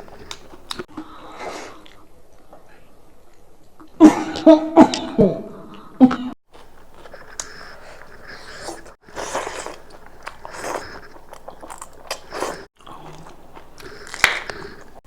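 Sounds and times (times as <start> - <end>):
crunchy bites and chewing: 0.0 - 0.9, 6.5 - 15.0.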